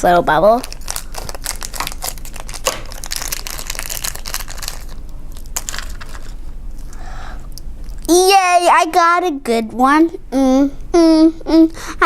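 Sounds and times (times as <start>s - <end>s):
plastic packaging crinkling and tearing: 0.5s - 6.4s.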